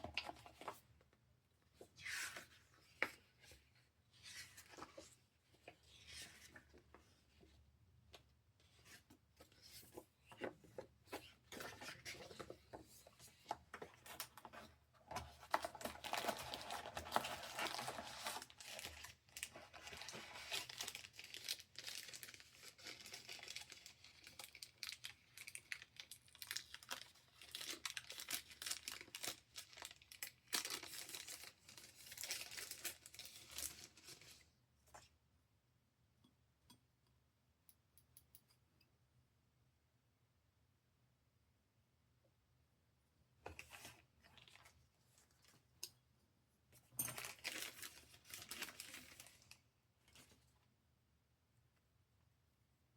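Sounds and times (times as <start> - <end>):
packaging crinkling and rustling: 13.9 - 34.5, 47.0 - 50.4.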